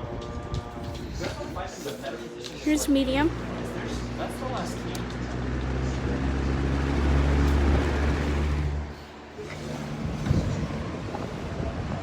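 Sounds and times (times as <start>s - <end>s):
box fan running: 0.0s - 12.0s
uneven rumble: 3.4s - 12.0s.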